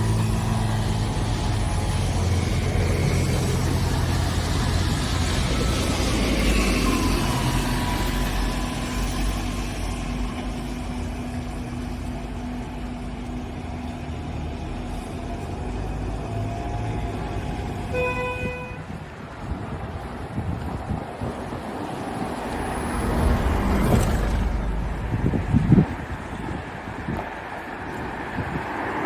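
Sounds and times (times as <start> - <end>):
engine hum: 0.0 - 29.0
vehicles passing: 0.0 - 29.0
car horn toot: 17.9 - 18.9.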